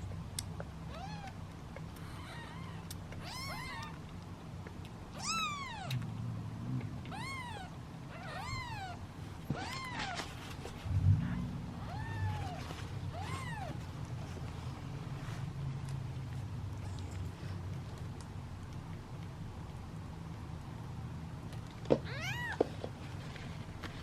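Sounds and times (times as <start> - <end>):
steady low hum: 0.0 - 24.0
kittens meowing: 0.8 - 4.0, 5.1 - 6.0, 7.1 - 10.4, 11.2 - 13.8, 22.1 - 22.6.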